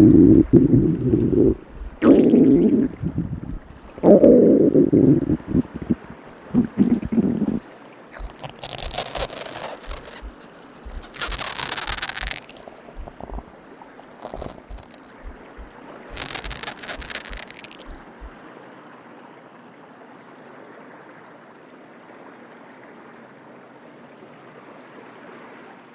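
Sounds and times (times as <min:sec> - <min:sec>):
hissing swells of noise: 0:00.0 - 0:13.4
crickets chirping: 0:00.0 - 0:18.4.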